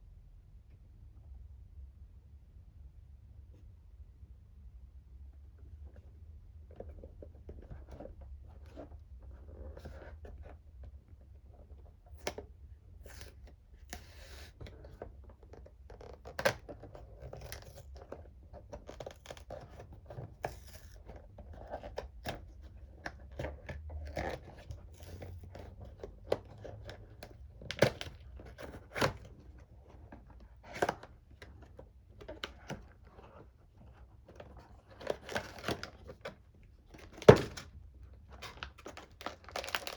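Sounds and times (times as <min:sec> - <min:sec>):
packaging rustling and tearing: 0:36.9 - 0:39.9.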